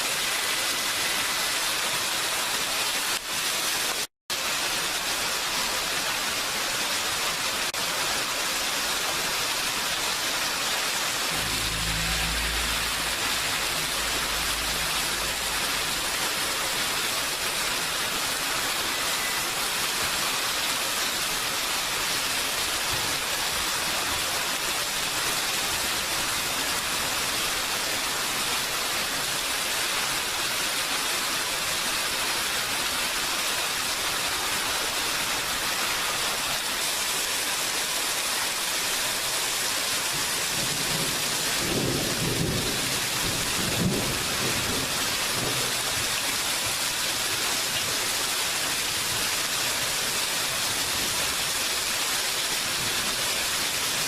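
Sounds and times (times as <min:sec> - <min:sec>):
steady rain falling: 0:00.0 - 0:54.0
thunder rumble and crack: 0:11.3 - 0:17.4, 0:40.6 - 0:45.9.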